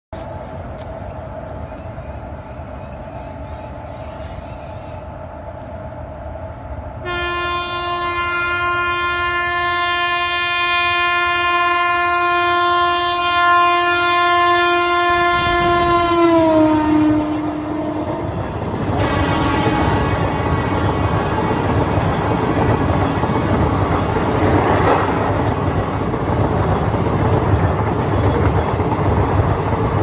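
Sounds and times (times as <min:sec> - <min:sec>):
train rumbling: 0:00.1 - 0:30.0
locomotive horn blast: 0:07.0 - 0:22.1.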